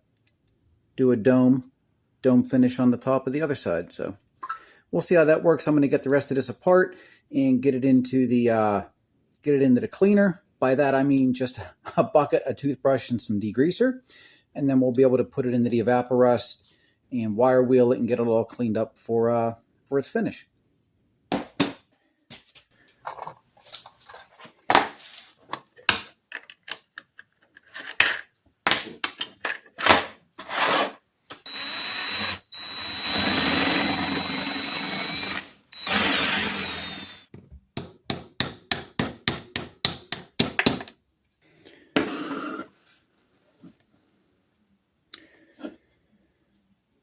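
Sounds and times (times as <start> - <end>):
power drill whining: 31.4 - 37.3.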